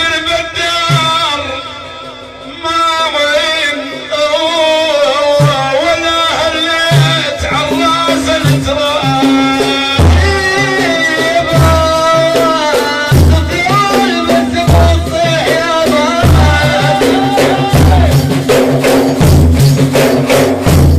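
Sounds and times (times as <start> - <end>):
man singing chant: 0.0 - 18.4
hand drum beats: 5.3 - 20.9.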